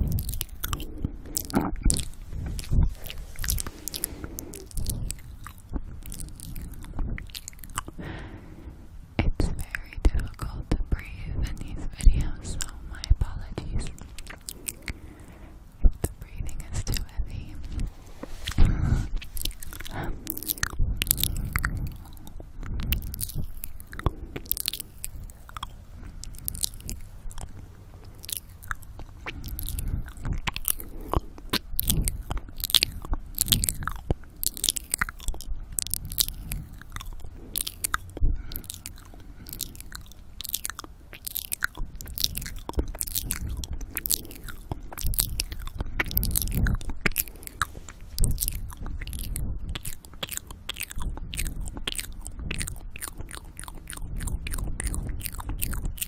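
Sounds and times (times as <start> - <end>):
wet mouth clicks and smacks: 0.0 - 8.1, 9.3 - 56.0
heavy breathing on microphone: 0.0 - 9.2, 14.1 - 40.6.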